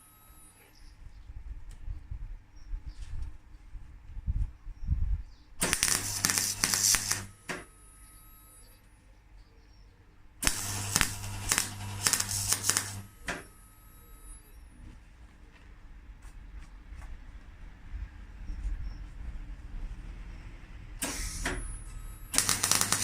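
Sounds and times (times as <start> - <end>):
welder humming: 0.0 - 0.9, 5.6 - 8.6, 10.4 - 14.6, 21.0 - 23.0
electric welding crackle: 5.6 - 7.7, 10.4 - 13.5, 22.2 - 23.0
sharp click: 5.6 - 7.7, 10.4 - 13.5.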